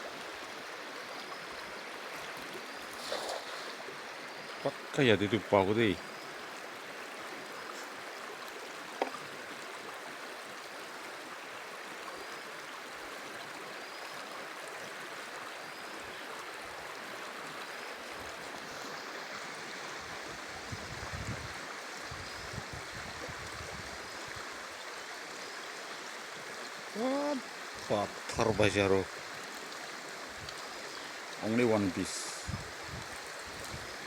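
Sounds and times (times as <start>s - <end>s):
river water rushing: 23.9s - 34.0s.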